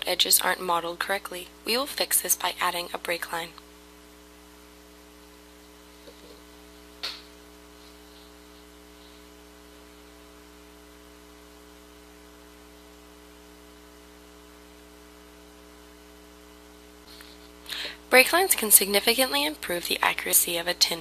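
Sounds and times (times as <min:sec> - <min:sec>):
low electrical hum: 0:00.0 - 0:21.0.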